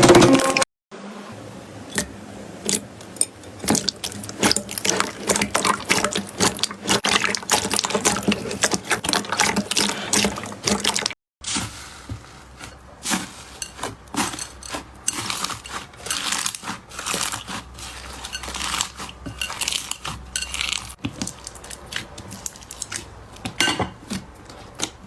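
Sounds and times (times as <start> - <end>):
slime squelching and popping: 3.6 - 11.8.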